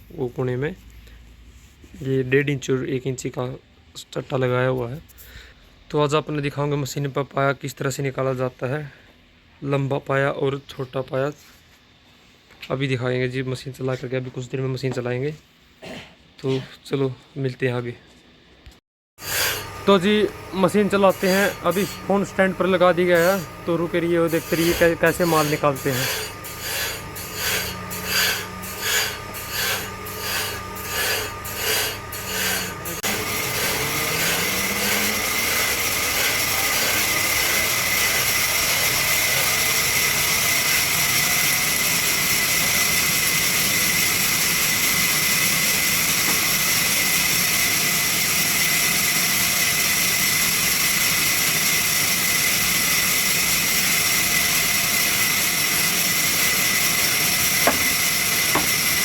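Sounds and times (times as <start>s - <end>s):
rhythmic rasping strokes: 19.2s - 48.7s, 50.7s - 59.0s
saw machine whining: 19.2s - 59.0s.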